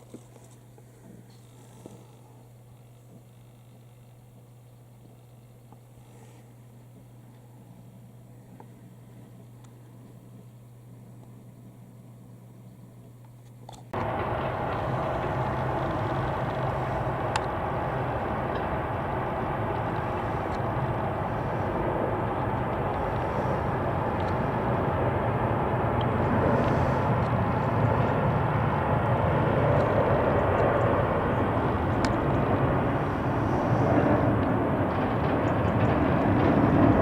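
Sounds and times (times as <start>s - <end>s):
jet engine rumble: 13.9s - 37.0s.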